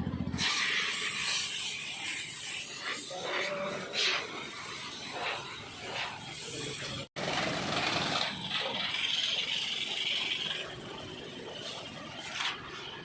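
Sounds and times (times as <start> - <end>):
pressure washer running: 0.0 - 13.0
spray hiss: 0.4 - 7.0.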